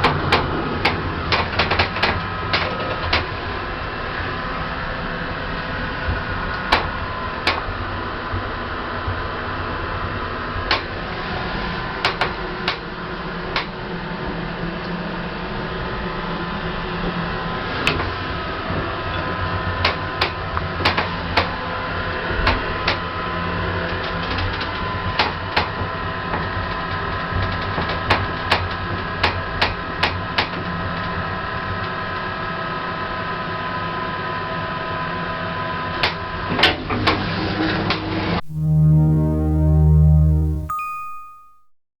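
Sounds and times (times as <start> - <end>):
steady machine tones: 38.4 - 41.6.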